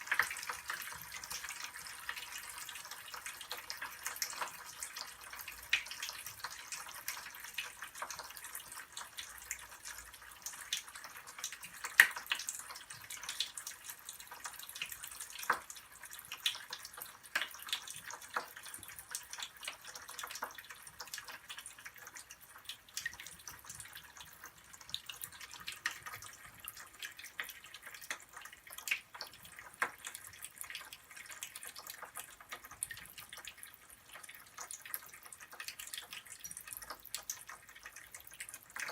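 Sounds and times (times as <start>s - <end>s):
crackles popping in water: 0.0s - 38.9s.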